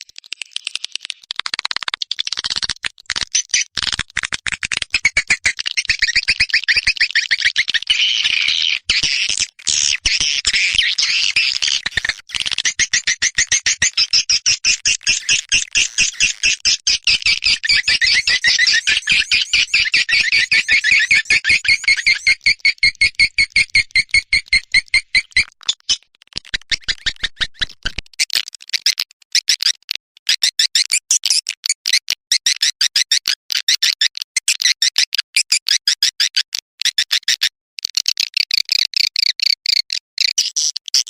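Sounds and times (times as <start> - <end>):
swiftlets twittering: 17.3 - 25.4.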